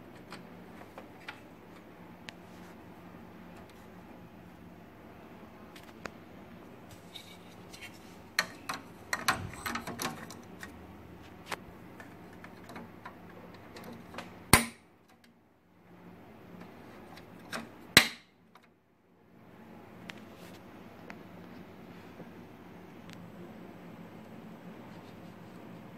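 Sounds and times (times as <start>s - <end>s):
printer parts clattering: 7.0s - 10.8s.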